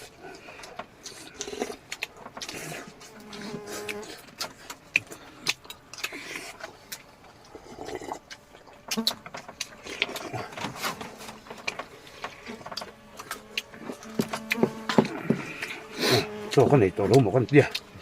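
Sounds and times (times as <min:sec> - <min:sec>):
chewing smacks: 0:00.0 - 0:10.8, 0:17.6 - 0:18.0.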